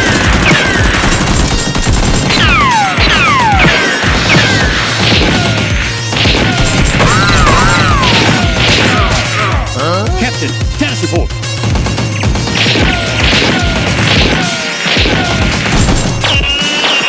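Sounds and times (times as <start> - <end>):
fight crashes and hits: 0.0 - 9.6
action soundtrack music: 0.0 - 17.0.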